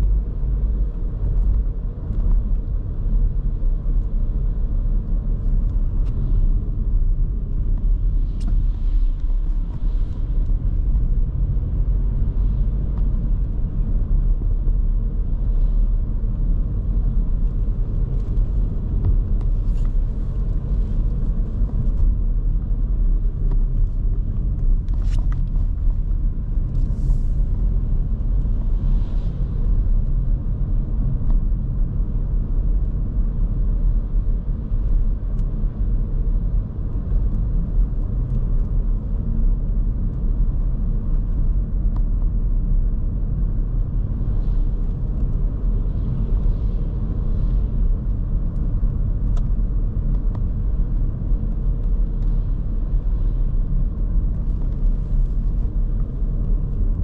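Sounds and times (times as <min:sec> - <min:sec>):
car cabin road rumble: 0:00.0 - 0:57.0.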